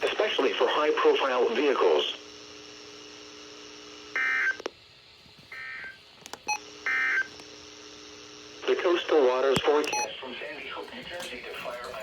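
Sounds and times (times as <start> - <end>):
faint steady hum: 0.0 - 12.0
touch-tone beeps: 9.9 - 10.1.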